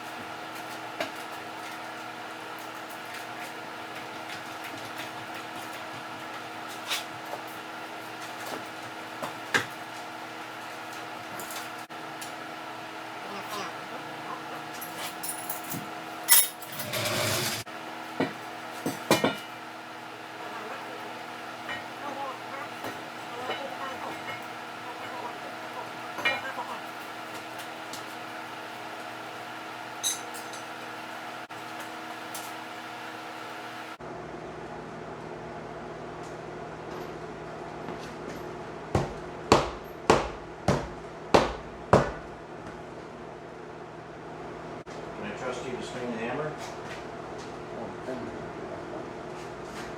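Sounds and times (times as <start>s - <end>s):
steady mechanical hum: 0.0s - 49.9s
scraping: 16.7s - 17.7s.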